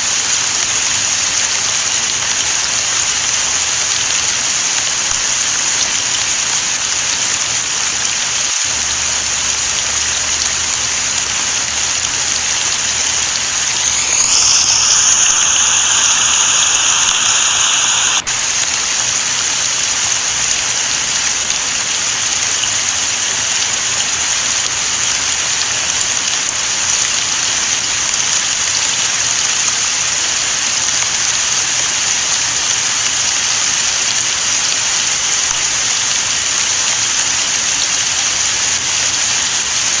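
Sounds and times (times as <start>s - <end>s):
heavy rain falling: 7.2s - 26.8s
loud rushing layer: 13.6s - 18.3s.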